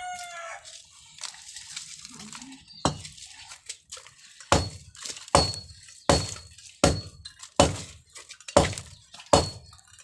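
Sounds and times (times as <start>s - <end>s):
hammer striking concrete: 2.9s - 3.2s, 4.5s - 8.0s, 8.6s - 9.7s.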